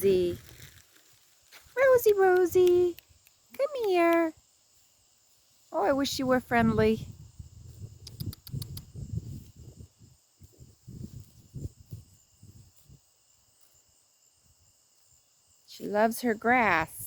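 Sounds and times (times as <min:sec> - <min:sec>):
crickets chirring: 0:00.0 - 0:17.0
sharp clicks: 0:08.0 - 0:09.0.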